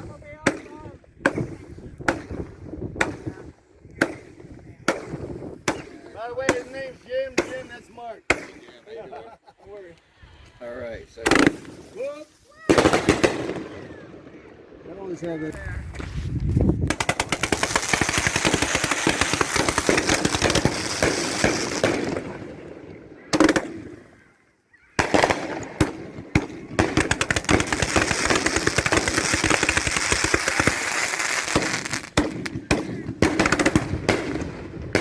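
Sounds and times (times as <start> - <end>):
fireworks crackling: 11.3 - 14.0, 15.9 - 22.6, 25.0 - 35.0.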